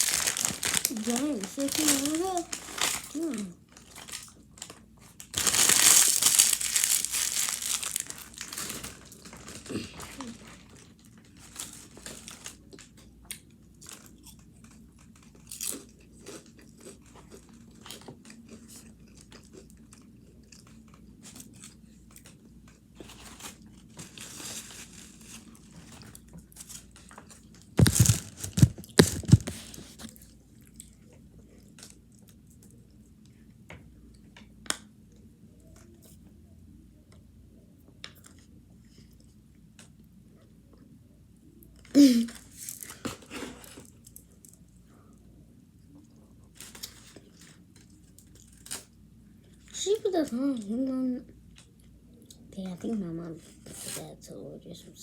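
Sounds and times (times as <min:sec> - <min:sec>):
person chewing and crunching food: 0:00.0 - 0:34.3, 0:41.6 - 0:49.7.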